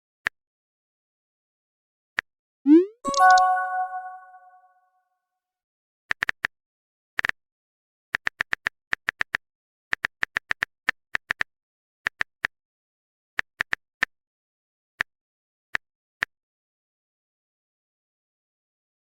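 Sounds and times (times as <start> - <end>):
short digital clicks: 2.7 - 4.6.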